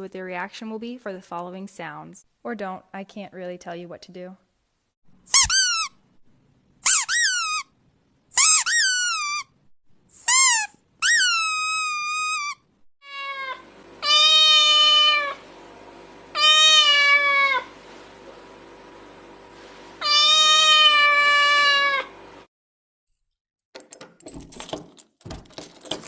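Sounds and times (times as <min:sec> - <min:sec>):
cat meowing: 0:13.0 - 0:15.4, 0:16.4 - 0:17.7, 0:20.0 - 0:22.1.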